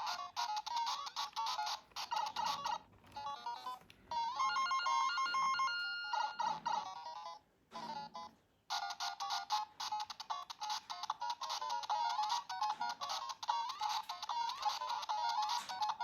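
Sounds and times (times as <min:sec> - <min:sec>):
electronic beeping melody: 0:04.2 - 0:06.9.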